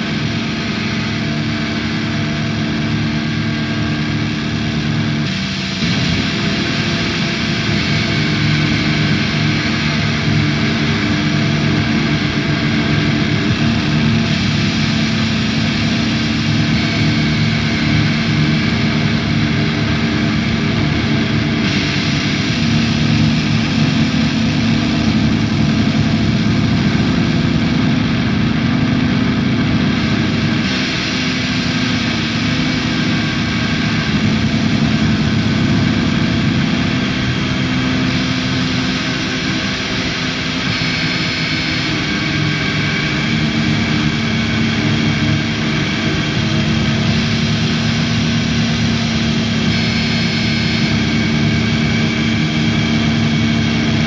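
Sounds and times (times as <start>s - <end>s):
drone noise music: 0.0s - 54.0s.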